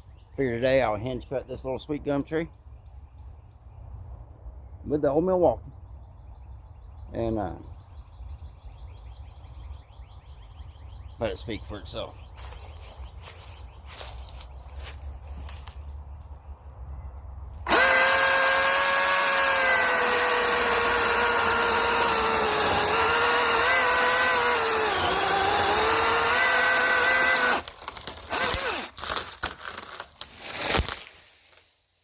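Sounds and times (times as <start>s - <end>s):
battery chainsaw whining: 17.6s - 30.0s
tree cracking and falling: 27.2s - 31.8s.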